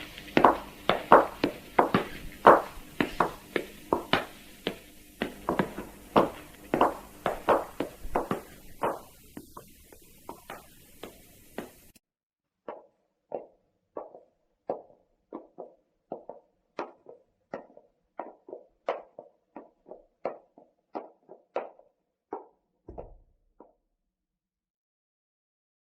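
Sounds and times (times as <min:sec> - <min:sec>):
footsteps in dress shoes: 0:00.0 - 0:12.0, 0:12.7 - 0:23.2
low hiss: 0:00.0 - 0:12.0.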